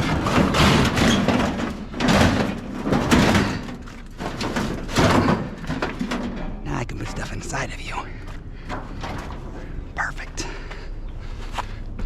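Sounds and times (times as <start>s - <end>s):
metal tank scraping and bumping: 0.0s - 10.0s.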